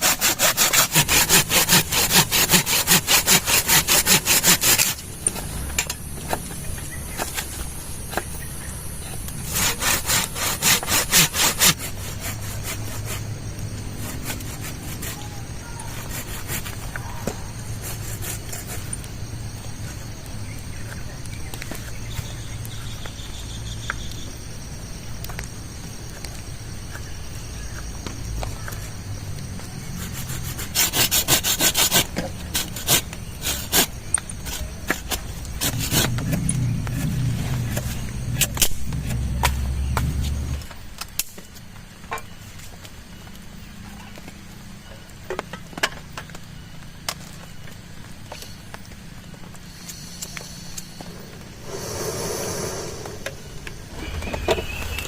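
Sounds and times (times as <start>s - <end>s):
insects chirring: 0.0s - 44.2s, 44.8s - 55.0s
low hum: 51.0s - 55.0s.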